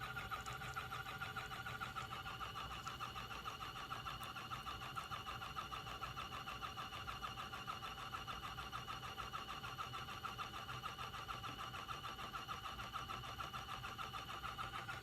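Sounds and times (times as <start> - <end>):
electric pump pulsing buzz: 0.0 - 6.4.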